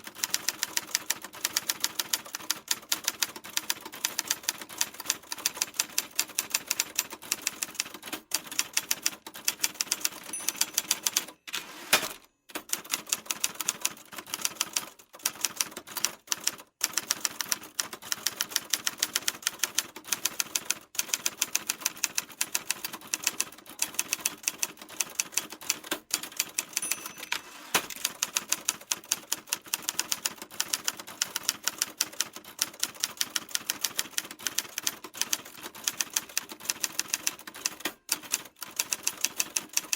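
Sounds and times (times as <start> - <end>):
loud typewriter clack: 9.8 - 13.1, 25.8 - 29.1.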